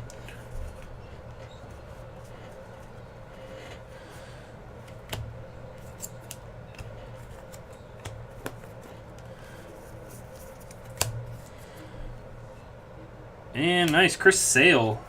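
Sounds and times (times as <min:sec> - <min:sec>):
steady low hum: 0:00.0 - 0:15.0
cards clicking and snapping: 0:04.8 - 0:09.3, 0:10.0 - 0:11.6.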